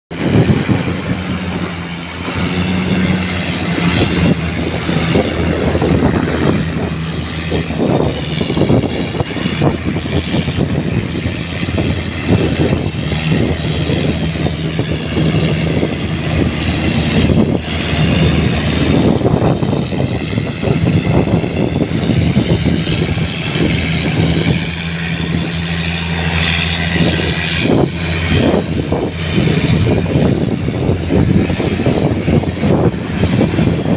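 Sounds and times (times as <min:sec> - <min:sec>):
boat diesel engine droning: 0:00.1 - 0:33.9.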